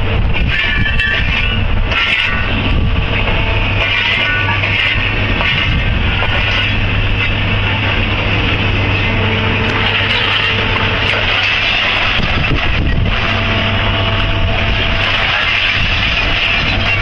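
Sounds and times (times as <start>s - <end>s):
heavy diesel machinery running: 0.0s - 17.0s.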